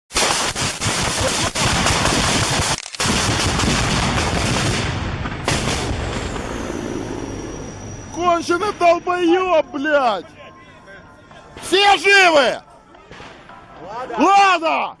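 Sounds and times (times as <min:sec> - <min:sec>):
heavy gunfire and impacts: 0:00.1 - 0:06.6
loud blast: 0:00.1 - 0:09.0.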